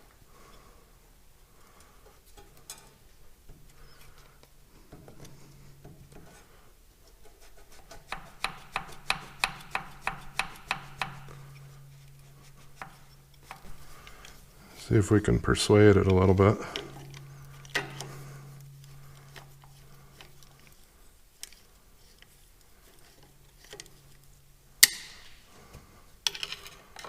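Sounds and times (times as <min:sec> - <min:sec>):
hand tools scraping metal: 0:04.9 - 0:25.3.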